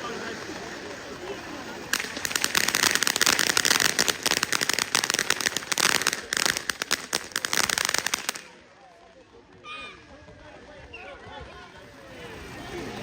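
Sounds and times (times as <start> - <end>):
firecrackers crackling: 0.0 - 8.9.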